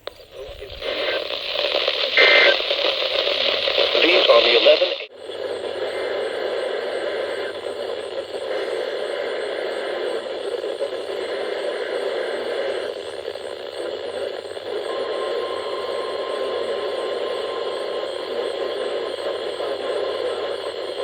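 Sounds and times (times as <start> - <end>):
radio static hiss: 0.0 - 21.0
faint steady tone: 5.6 - 21.0.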